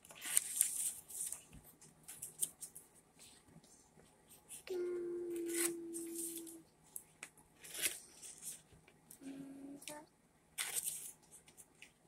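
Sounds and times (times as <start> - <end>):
paper rustling: 0.0 - 4.7, 7.6 - 8.8, 10.6 - 12.0.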